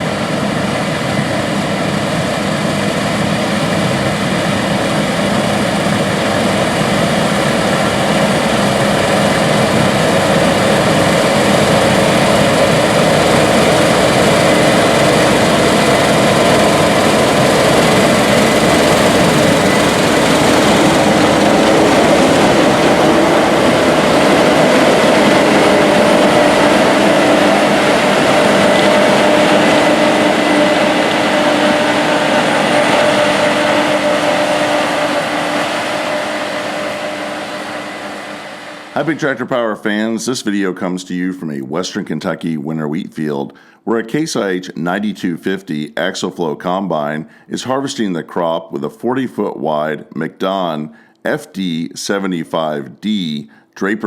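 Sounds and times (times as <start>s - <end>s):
combine harvester drone: 0.0s - 40.2s.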